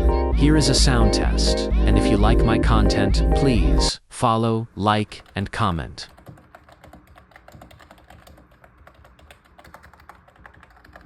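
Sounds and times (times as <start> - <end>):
rapid keyboard typing: 5.1 - 11.0.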